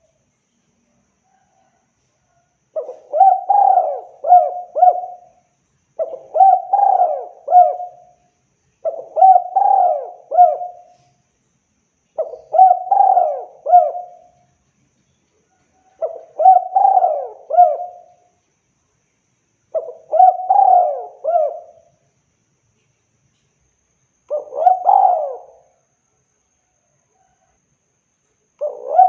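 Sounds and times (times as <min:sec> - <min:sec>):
dove cooing: 0:02.7 - 0:05.4, 0:06.0 - 0:08.2, 0:08.8 - 0:11.1, 0:12.2 - 0:14.4, 0:15.8 - 0:18.3, 0:19.7 - 0:22.0, 0:24.3 - 0:25.7, 0:28.6 - 0:29.0.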